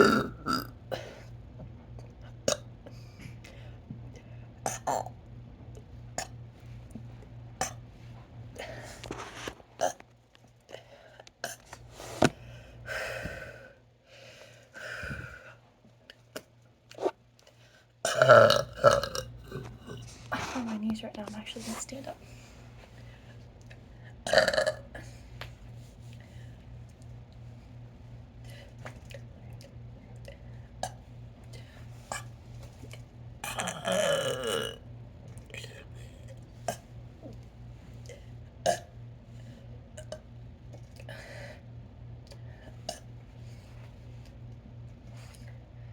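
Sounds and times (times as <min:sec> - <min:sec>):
woman burping: 0:00.0 - 0:01.2, 0:18.0 - 0:20.1, 0:24.2 - 0:25.0, 0:33.4 - 0:34.8, 0:38.6 - 0:38.9.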